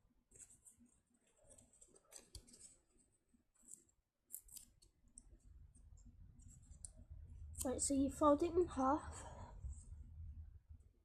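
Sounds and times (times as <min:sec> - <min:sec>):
paper crackles: 0:00.3 - 0:03.0
paper crinkling and rustling: 0:00.3 - 0:04.7.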